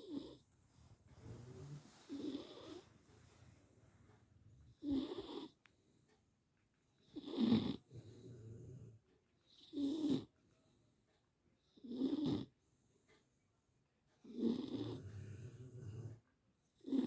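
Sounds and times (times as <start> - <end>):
dog snoring: 0.0 - 0.4, 1.1 - 3.0, 4.6 - 5.6, 7.0 - 10.3, 11.7 - 12.5, 14.2 - 17.0.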